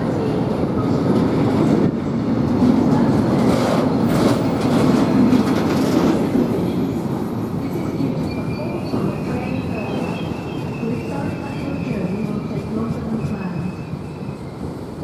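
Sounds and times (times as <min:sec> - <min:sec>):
freight train rumbling past: 0:00.0 - 0:15.0
faint high wheel squeal: 0:07.6 - 0:14.7.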